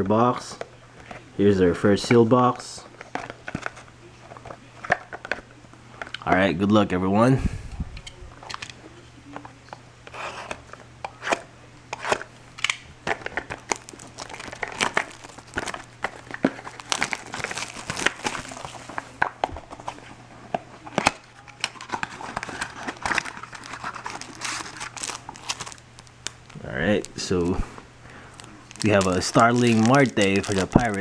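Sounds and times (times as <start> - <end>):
plastic wrap tearing and crinkling: 10.1 - 20.1, 20.8 - 31.0
cardboard crackles and rustles: 13.0 - 31.0.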